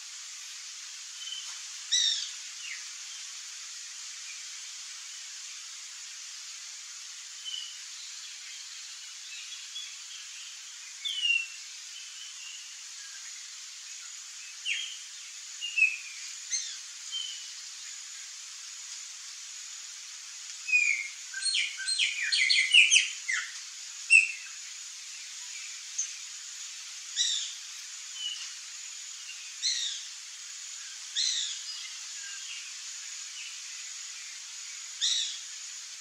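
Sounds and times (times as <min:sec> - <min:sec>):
steady background hiss: 0:00.0 - 0:36.0
birds chirping and whistling: 0:20.7 - 0:23.4.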